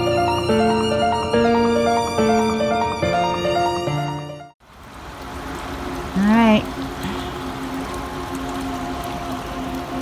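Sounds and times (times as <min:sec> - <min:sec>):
violin-led strings music: 0:00.0 - 0:04.6.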